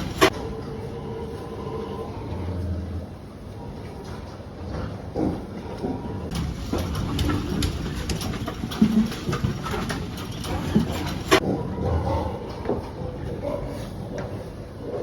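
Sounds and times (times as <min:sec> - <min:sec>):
clicking and rustling: 0:06.3 - 0:11.4.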